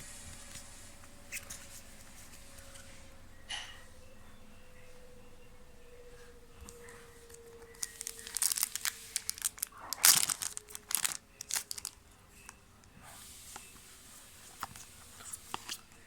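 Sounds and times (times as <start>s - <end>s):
foil wrapper crinkling and tearing: 7.4s - 12.0s.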